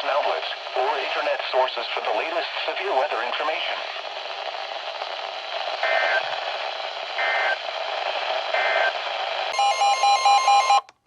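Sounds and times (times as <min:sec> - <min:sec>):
lower tone beeping: 0:09.6 - 0:10.9
steady alert tone: 0:09.6 - 0:10.9.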